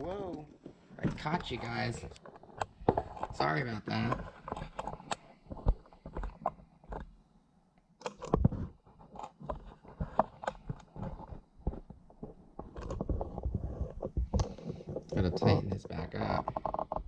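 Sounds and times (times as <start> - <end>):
objects handled with clicks and knocks: 0.0 - 17.0.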